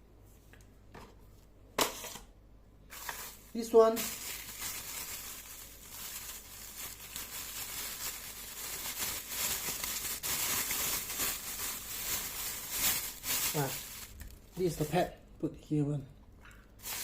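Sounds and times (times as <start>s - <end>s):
plastic packaging crinkling: 2.9s - 15.1s, 16.8s - 17.0s.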